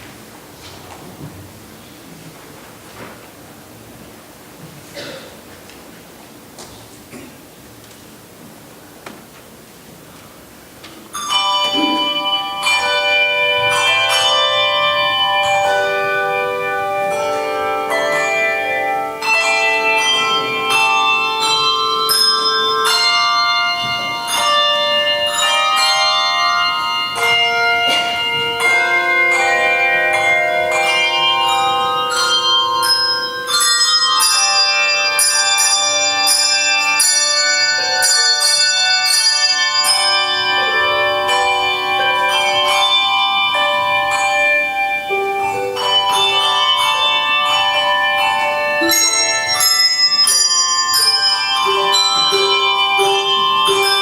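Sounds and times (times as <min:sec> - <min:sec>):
handbell choir playing: 0:11.1 - 0:54.0.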